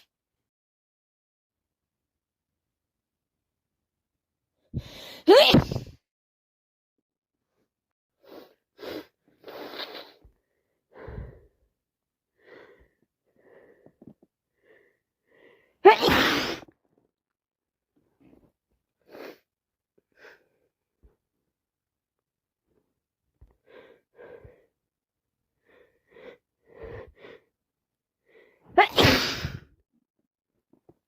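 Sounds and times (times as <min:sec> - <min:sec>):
woman sneezing loudly: 0:05.2 - 0:06.0, 0:15.8 - 0:16.7, 0:28.8 - 0:29.7.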